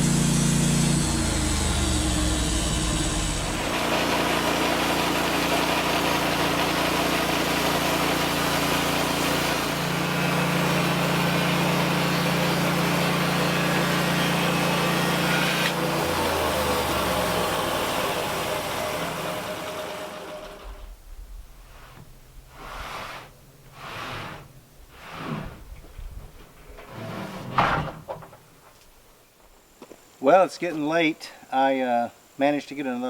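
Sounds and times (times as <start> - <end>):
small sawmill engine running: 0.0 - 21.0.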